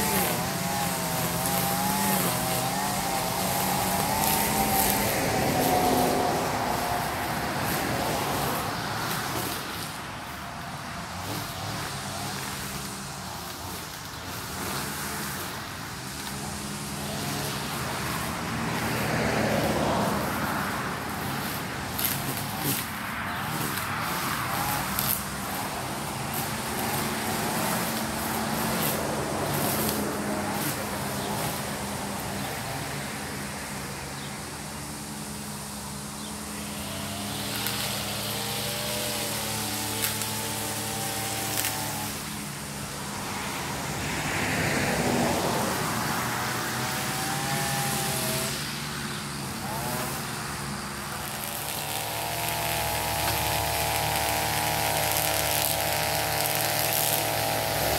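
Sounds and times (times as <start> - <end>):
lawn mower engine running: 0.0 - 57.9.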